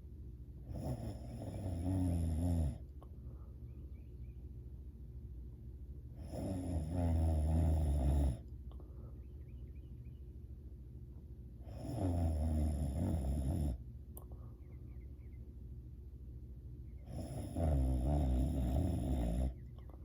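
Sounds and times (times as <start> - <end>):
quiet breathing: 0.6 - 4.4, 6.1 - 9.6, 11.6 - 15.1
person snoring: 0.7 - 2.8, 6.2 - 8.4, 11.6 - 13.8, 17.1 - 19.6.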